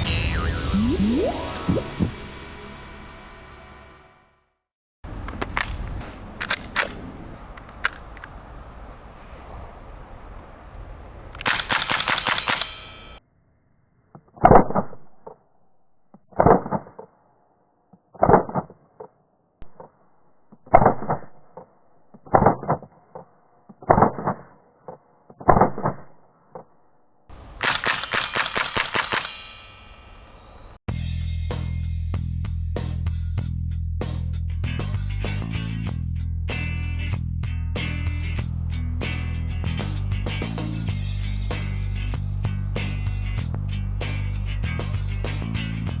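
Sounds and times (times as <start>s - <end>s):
airsoft pistol firing: 5.1s - 8.9s, 11.2s - 13.2s, 27.3s - 30.8s
pistol slide cycling: 5.1s - 13.2s, 27.3s - 30.8s.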